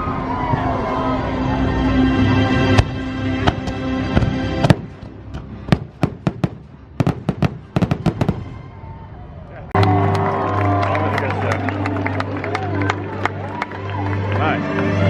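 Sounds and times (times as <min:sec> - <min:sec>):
music soundtrack: 0:00.0 - 0:15.0
fireworks bangs: 0:02.8 - 0:08.6.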